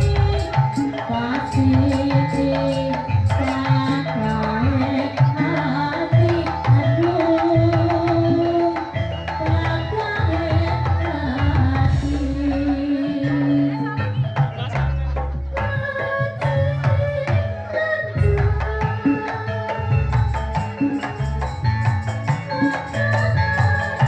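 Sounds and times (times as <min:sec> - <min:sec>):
moving bass line: 0:00.0 - 0:07.8, 0:19.8 - 0:24.0
held melody line: 0:00.0 - 0:13.0, 0:18.6 - 0:24.0
drums beating busy rhythm: 0:00.0 - 0:24.0.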